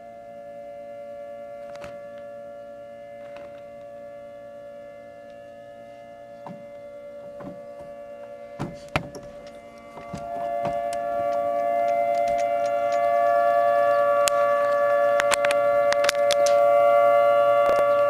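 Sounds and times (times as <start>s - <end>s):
tornado warning siren: 0.0s - 18.0s
sharp knocks: 8.6s - 13.0s.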